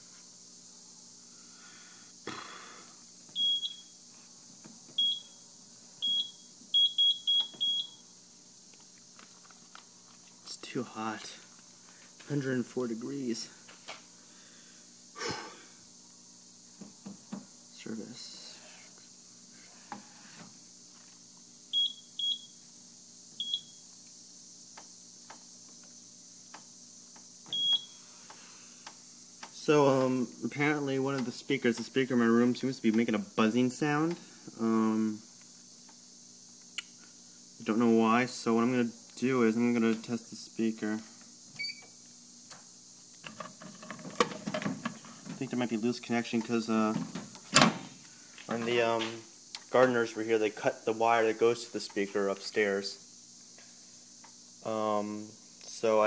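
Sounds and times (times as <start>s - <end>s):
faint steady hum: 0.0s - 56.0s
fire alarm panel beeps: 3.4s - 3.9s, 5.0s - 5.3s, 6.0s - 8.0s, 21.7s - 22.5s, 23.4s - 23.8s, 27.5s - 28.0s, 41.6s - 41.9s
clunk and rustle: 43.2s - 45.4s.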